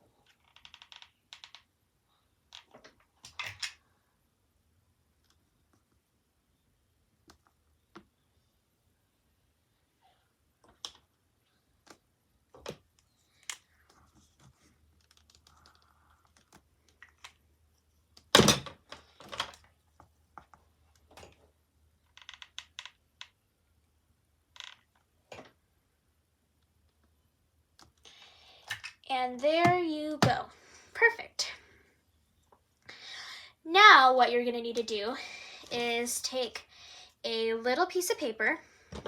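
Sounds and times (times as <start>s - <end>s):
wooden tiles clicking: 0.2s - 1.7s.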